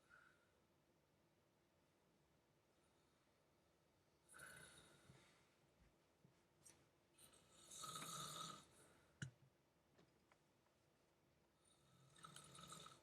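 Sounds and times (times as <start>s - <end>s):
person snoring: 7.5s - 8.8s, 11.7s - 13.0s.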